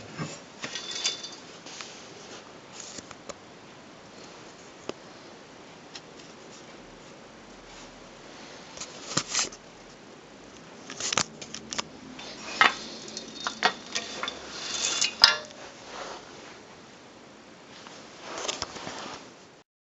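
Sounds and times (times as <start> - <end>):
metal stand clinking and knocking: 0.6 - 1.5, 12.2 - 15.7.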